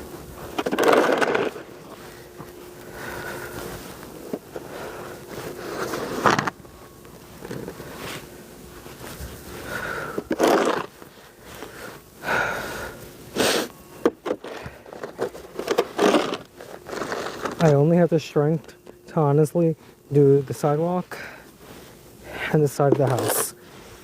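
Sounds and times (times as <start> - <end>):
shovel scraping snow: 0.4 - 2.2, 5.3 - 6.5, 10.3 - 10.9, 15.3 - 17.8, 22.8 - 24.0
hard breathing: 1.9 - 6.0, 9.5 - 10.4, 11.0 - 13.9.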